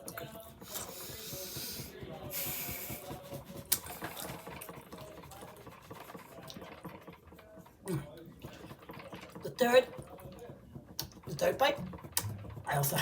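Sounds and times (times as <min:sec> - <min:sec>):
chewing and mouth noises: 0:00.0 - 0:07.0
hiss: 0:00.6 - 0:04.0.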